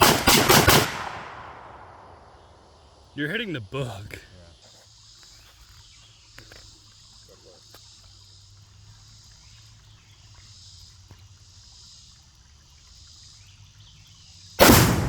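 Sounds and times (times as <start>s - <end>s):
gunshot: 0.0s - 2.0s, 14.6s - 15.0s
insects chirring: 0.0s - 15.0s
loud explosion with rumble: 14.6s - 15.0s.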